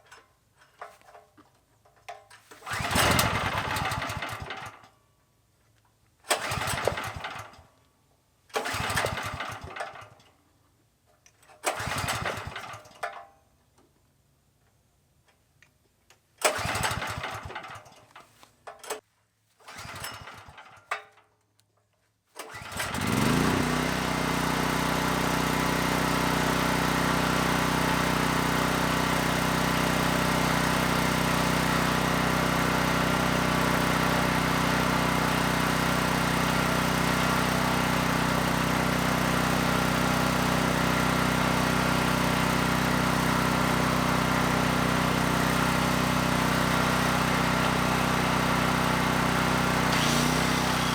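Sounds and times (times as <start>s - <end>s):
generator recoil starter pulls: 0.0s - 4.9s, 6.3s - 7.7s, 8.5s - 10.3s, 11.2s - 13.3s, 16.1s - 19.0s, 19.6s - 21.3s, 22.3s - 50.9s
generator engine running: 2.6s - 4.7s, 22.5s - 50.9s.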